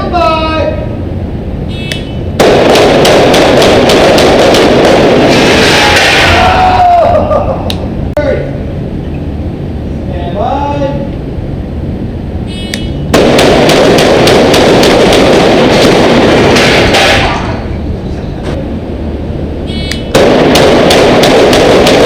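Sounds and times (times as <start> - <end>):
rapid shotgun fire: 2.4 - 6.4, 13.1 - 17.6, 20.1 - 22.0.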